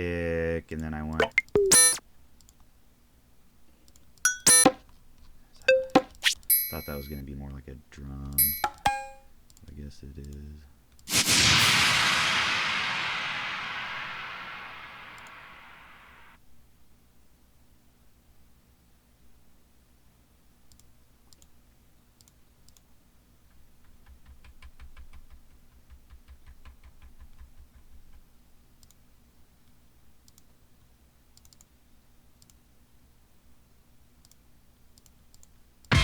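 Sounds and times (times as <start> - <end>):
keyboard and mouse clicking: 1.2 - 2.6, 20.7 - 21.5, 31.4 - 31.7.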